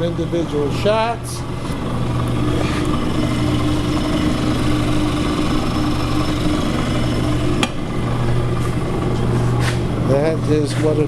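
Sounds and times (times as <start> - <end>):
electric motor humming: 0.0 - 11.0.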